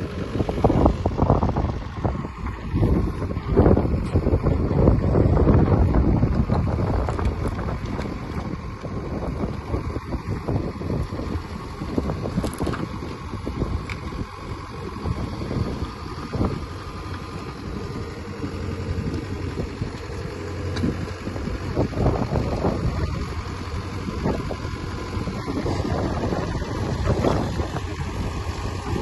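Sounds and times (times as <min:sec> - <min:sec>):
excavator diesel engine running: 0:00.0 - 0:29.0
excavator clatter: 0:02.4 - 0:29.0.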